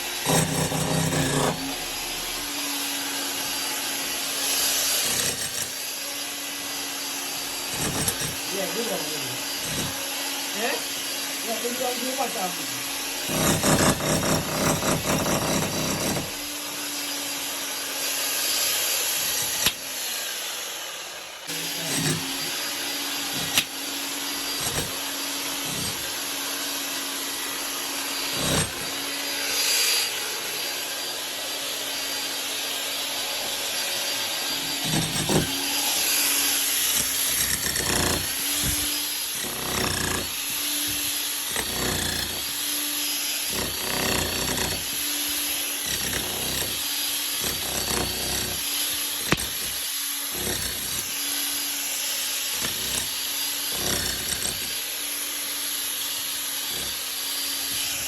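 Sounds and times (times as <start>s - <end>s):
power tool motor running: 0.0s - 58.0s
knocks and scraping on material: 7.8s - 8.4s, 23.3s - 23.7s, 34.7s - 36.1s, 49.3s - 49.7s.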